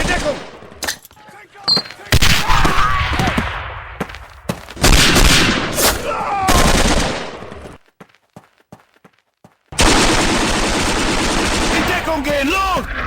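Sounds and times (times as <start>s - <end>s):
rifle and machine-gun fire: 0.0s - 0.5s, 4.8s - 5.8s, 6.4s - 7.5s, 9.8s - 12.9s.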